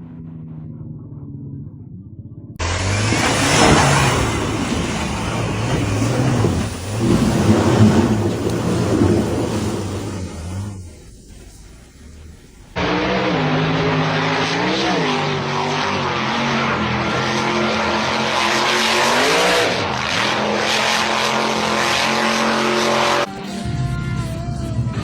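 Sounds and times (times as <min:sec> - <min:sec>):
loud rushing noise: 0:02.6 - 0:16.6
truck engine revving hard: 0:02.6 - 0:25.0.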